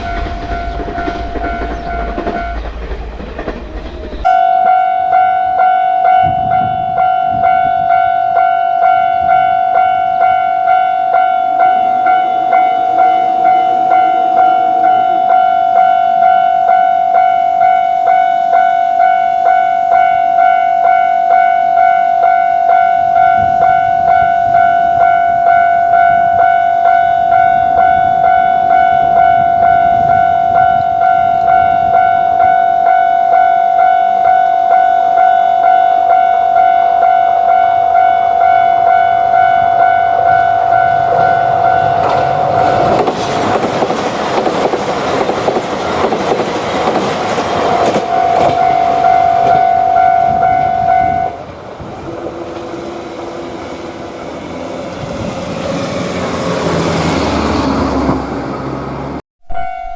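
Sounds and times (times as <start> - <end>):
train wheels clattering over rails: 0.0 - 4.3, 40.9 - 50.4
railroad crossing bell ringing: 0.0 - 57.2, 59.5 - 59.9.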